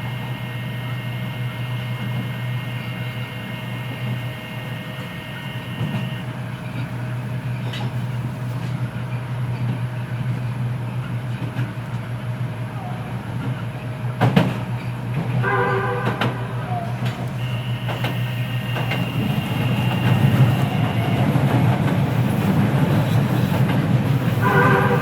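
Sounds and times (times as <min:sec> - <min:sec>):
train motor low hum: 0:00.0 - 0:25.0.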